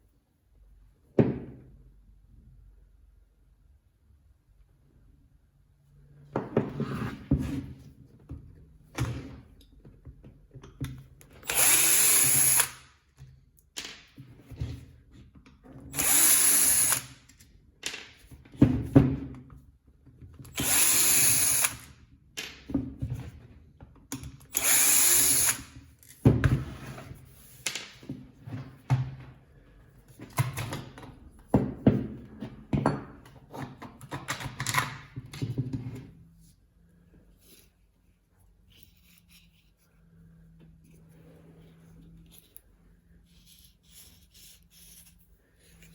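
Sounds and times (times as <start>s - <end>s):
power tool running: 11.4s - 12.8s, 16.0s - 17.1s, 20.6s - 21.9s, 24.5s - 25.7s.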